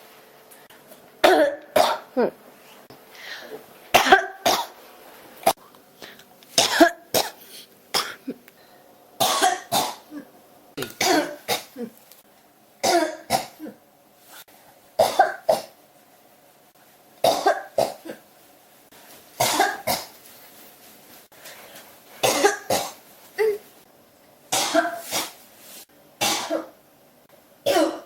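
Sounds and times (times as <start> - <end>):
person coughing: 1.2 - 2.4, 4.0 - 4.8, 6.6 - 8.4, 9.2 - 12.0, 12.8 - 13.8, 15.0 - 15.8, 17.2 - 18.2, 19.4 - 20.2, 22.2 - 23.6, 24.6 - 25.4, 26.2 - 26.8, 27.6 - 28.0.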